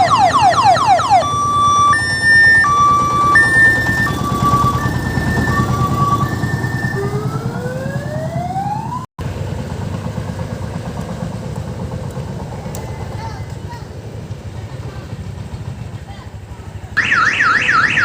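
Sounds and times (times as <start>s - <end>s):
loud siren wailing: 0.0s - 9.1s, 17.0s - 18.0s
diesel engine chugging: 0.0s - 18.0s.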